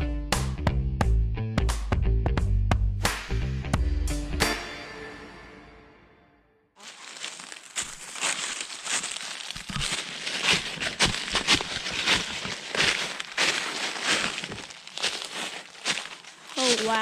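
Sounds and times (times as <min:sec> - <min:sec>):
sharp snaps: 0:03.0 - 0:04.6
guitar music: 0:03.0 - 0:06.4
dry leaves crunching: 0:06.8 - 0:17.0.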